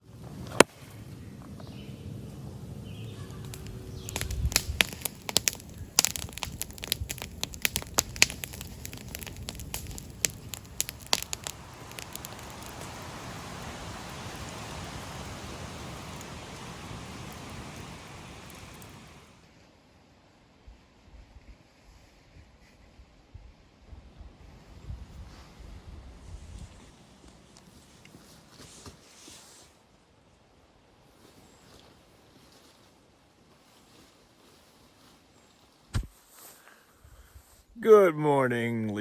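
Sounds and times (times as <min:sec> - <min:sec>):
campfire crackling: 0:00.0 - 0:19.5, 0:35.4 - 0:36.6
rushing hiss: 0:03.4 - 0:19.4.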